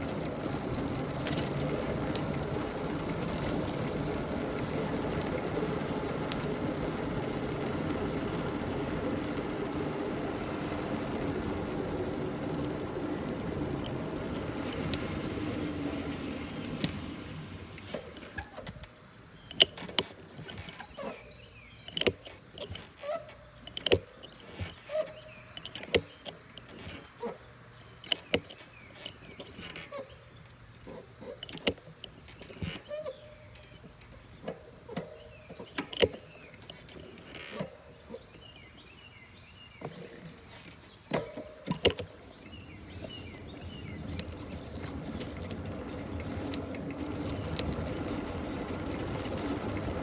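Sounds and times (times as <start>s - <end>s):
bike brakes droning hum: 0.0s - 18.8s, 30.9s - 50.0s.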